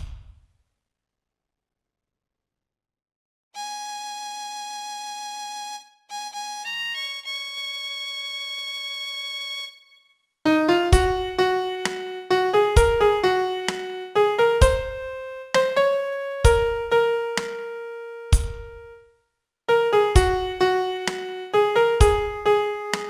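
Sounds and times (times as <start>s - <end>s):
piano melody: 10.5s - 19.0s, 19.7s - 23.0s.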